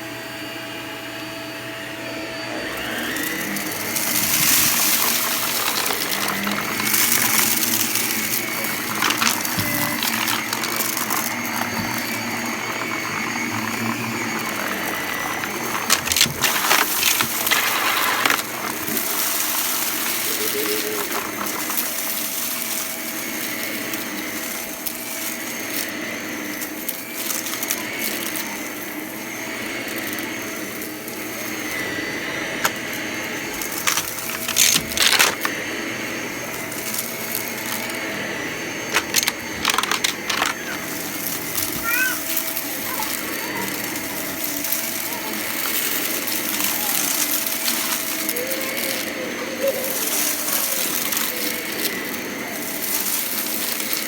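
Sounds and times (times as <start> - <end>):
vacuum cleaner motor whine: 0.0 - 54.0
debris rattling through vacuum: 2.4 - 54.0.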